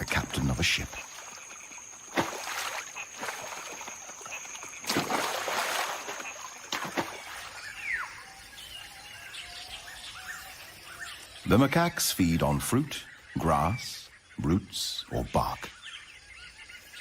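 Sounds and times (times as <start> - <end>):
monkeys splashing into water: 0.9 - 7.7.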